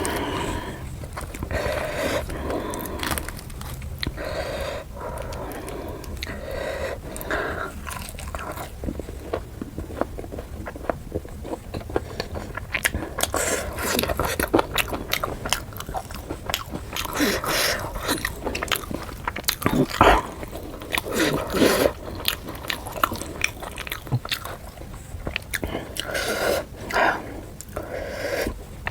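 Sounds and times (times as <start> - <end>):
person chewing wet food: 0.0 - 28.9.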